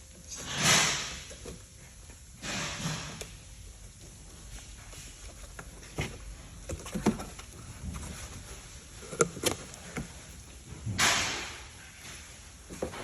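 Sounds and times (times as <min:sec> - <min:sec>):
packed parts knocking and clattering: 0:05.0 - 0:11.8.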